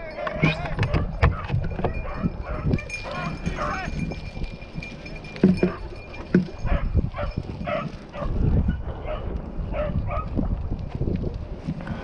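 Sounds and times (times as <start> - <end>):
dog barking: 6.6 - 8.4, 9.0 - 10.3.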